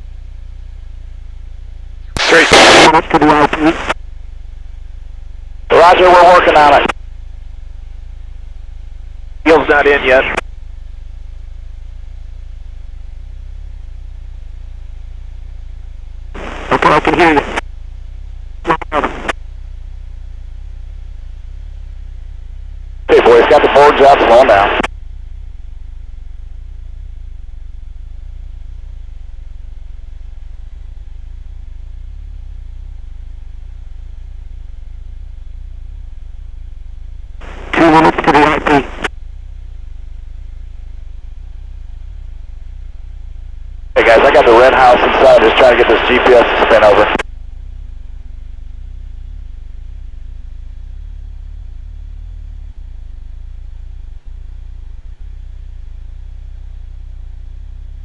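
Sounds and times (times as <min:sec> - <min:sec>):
airplane engine drone in cockpit: 0:00.0 - 0:58.0
faint steady hum: 0:00.0 - 0:58.0
cockpit airflow noise: 0:16.3 - 0:17.6, 0:37.4 - 0:39.2, 0:44.0 - 0:47.2.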